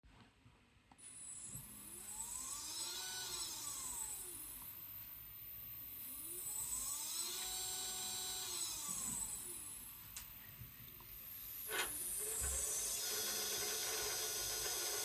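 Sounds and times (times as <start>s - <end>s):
motors whining while slewing: 1.2s - 4.6s, 6.0s - 9.9s, 11.3s - 15.0s.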